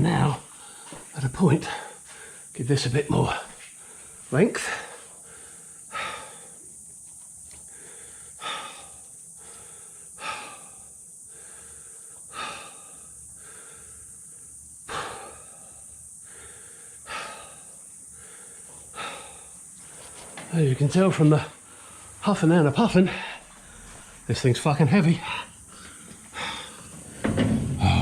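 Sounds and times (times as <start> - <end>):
man breathing hard: 0.5 - 1.1, 1.7 - 2.5, 3.4 - 6.7, 7.6 - 20.2, 21.3 - 22.2, 23.0 - 24.3, 25.1 - 28.0.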